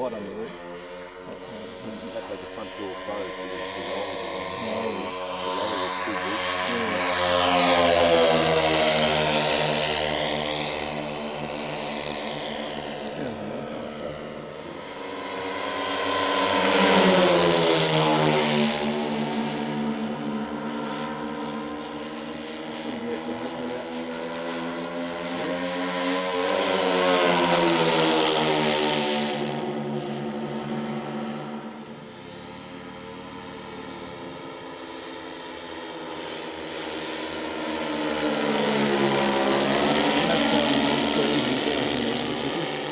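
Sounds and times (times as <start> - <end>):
model airplane engine and propeller: 0.0 - 42.9.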